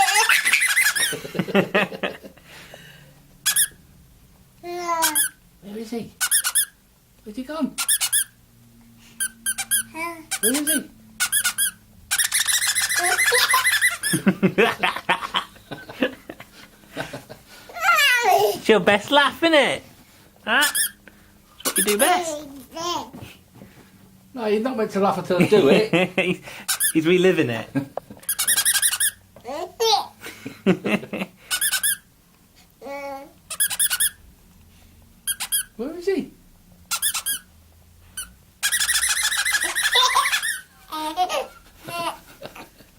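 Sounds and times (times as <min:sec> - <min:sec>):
high-pitched bird chirping: 0:00.0 - 0:01.1, 0:03.5 - 0:03.8, 0:05.0 - 0:05.4, 0:06.2 - 0:06.8, 0:07.8 - 0:08.4, 0:09.2 - 0:14.2, 0:21.6 - 0:22.1, 0:28.3 - 0:29.2, 0:33.5 - 0:34.2, 0:36.9 - 0:37.5, 0:38.2 - 0:40.6
baby laughing: 0:00.0 - 0:01.5, 0:09.6 - 0:15.5, 0:17.7 - 0:18.6, 0:21.6 - 0:23.1, 0:38.7 - 0:42.6
bird chirping: 0:07.8 - 0:08.4, 0:09.4 - 0:14.2.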